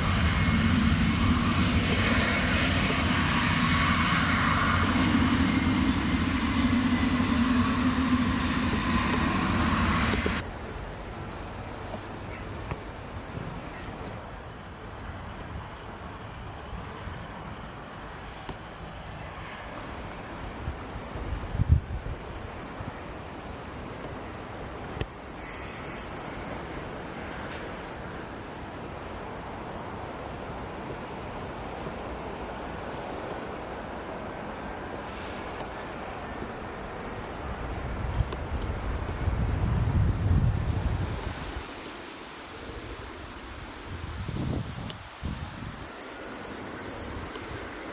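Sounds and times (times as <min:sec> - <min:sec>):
aircraft engine noise: 0:00.0 - 0:13.1
insects chirping: 0:00.0 - 0:47.9.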